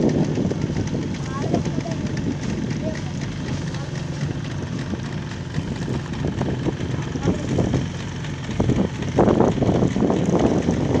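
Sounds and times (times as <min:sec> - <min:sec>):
engine running: 0:00.0 - 0:11.0
people talking: 0:01.1 - 0:04.6, 0:06.8 - 0:07.8.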